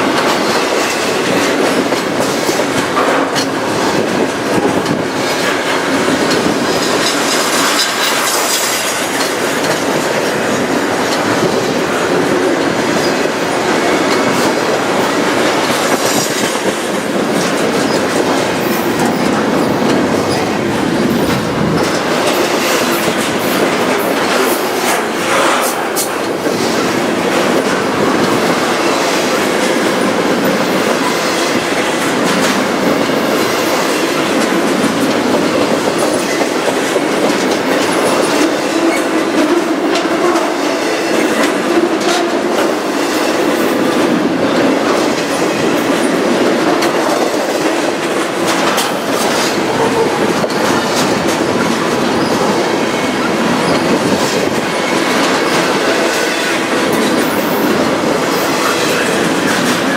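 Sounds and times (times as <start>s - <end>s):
freight train rumble: 0.0s - 59.9s
train wheels clattering over rail joints: 0.0s - 59.9s.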